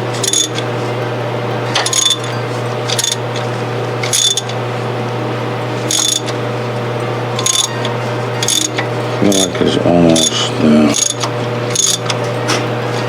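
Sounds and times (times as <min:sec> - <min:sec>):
steady low hum: 0:00.0 - 0:13.0
ratchet wrench clicking: 0:00.2 - 0:00.6, 0:01.8 - 0:02.3, 0:02.9 - 0:03.4, 0:04.0 - 0:04.6, 0:05.9 - 0:06.4, 0:07.4 - 0:07.7, 0:08.4 - 0:09.5, 0:11.0 - 0:12.2.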